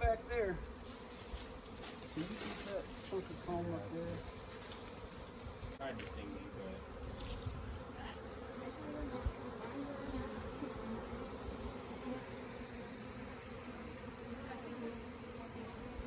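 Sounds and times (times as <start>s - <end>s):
honey bees buzzing: 0.0s - 16.0s.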